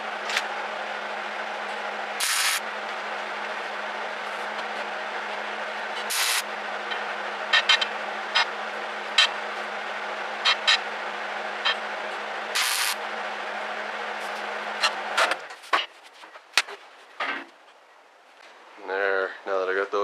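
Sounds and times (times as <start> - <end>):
electric welder humming: 2.0 - 4.4, 5.9 - 9.4, 11.6 - 13.4
welding arc crackling: 2.2 - 2.6, 6.0 - 6.4, 12.5 - 13.0.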